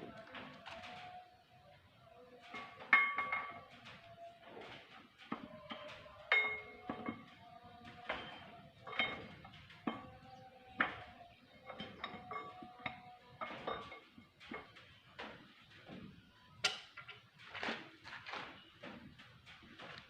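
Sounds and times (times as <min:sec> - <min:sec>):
metal tools knocking and clinking: 0:08.1 - 0:14.8.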